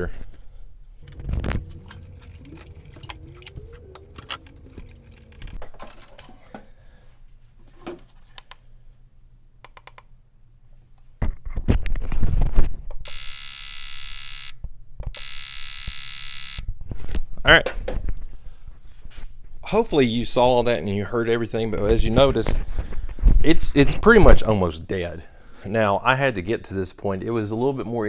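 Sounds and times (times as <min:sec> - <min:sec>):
handling rattles: 0:01.0 - 0:06.7
loud electric buzz: 0:13.1 - 0:14.5, 0:15.2 - 0:16.6.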